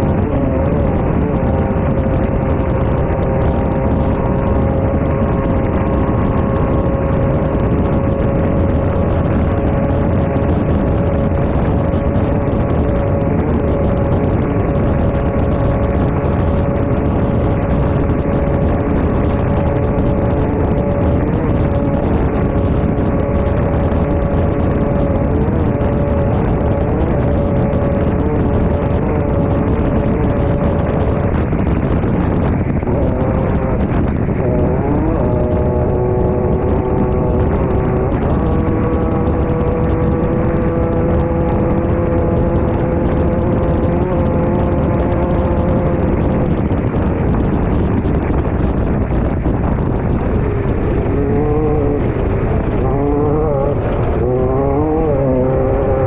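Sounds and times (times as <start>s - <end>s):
dense constant rumble: 0.0s - 56.0s
race car engine at high revs: 0.0s - 56.0s.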